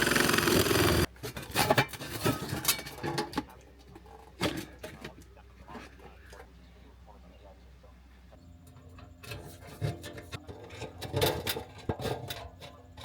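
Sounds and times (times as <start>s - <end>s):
power tool running: 0.0s - 1.1s
tools and parts clattering: 1.2s - 5.3s, 8.7s - 13.0s.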